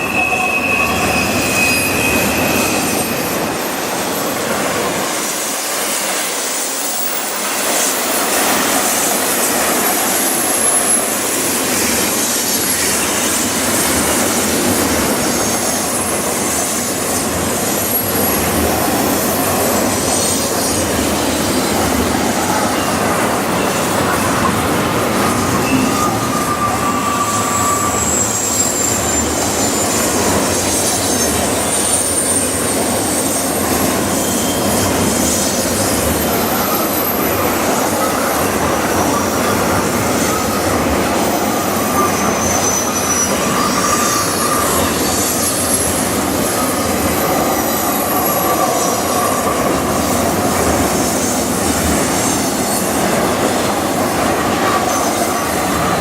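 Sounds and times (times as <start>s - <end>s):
high-pitched wheel squeals: 0.0s - 4.4s, 15.2s - 21.0s, 25.1s - 38.2s, 39.0s - 50.4s
train wheels rumbling on rail: 0.0s - 56.0s.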